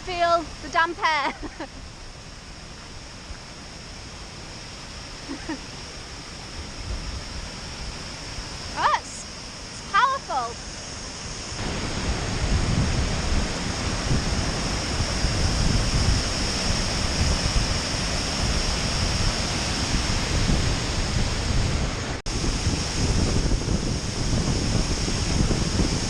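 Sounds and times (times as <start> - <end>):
waterfall roaring: 0.0 - 26.0
wind buffeting microphone: 6.4 - 26.0.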